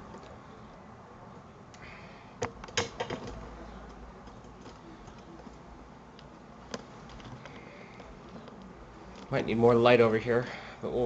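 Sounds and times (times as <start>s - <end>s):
low room noise: 0.0s - 11.0s
handling clicks and knocks: 2.4s - 5.6s, 6.2s - 9.4s.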